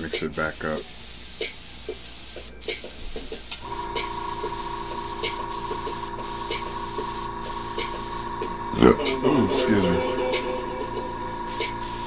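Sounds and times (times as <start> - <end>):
airbrush hissing: 0.0 - 12.0
two-pitch steady hum: 3.6 - 12.0.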